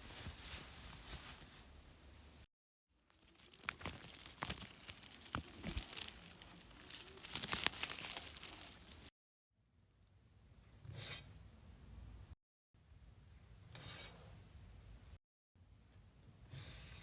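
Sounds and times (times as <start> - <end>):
crumpling crinkling crackles: 3.1 - 9.1.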